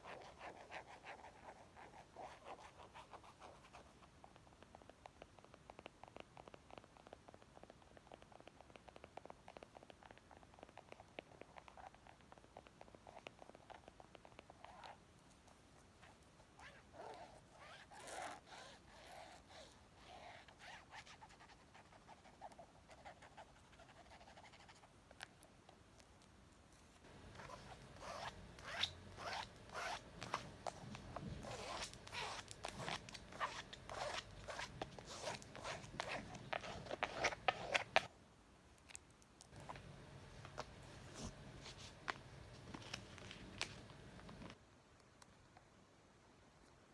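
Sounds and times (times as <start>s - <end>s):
scratching and tapping on a book: 27.1s - 38.1s, 39.5s - 44.6s.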